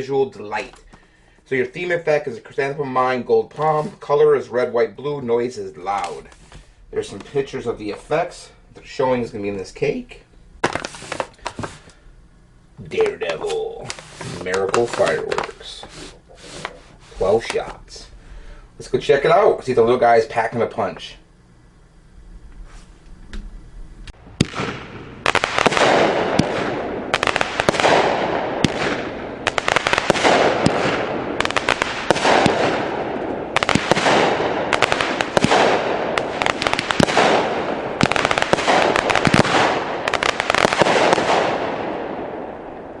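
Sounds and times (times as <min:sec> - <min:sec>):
fireworks launching and bursting: 0:10.6 - 0:11.9, 0:12.9 - 0:18.1, 0:24.1 - 0:43.0.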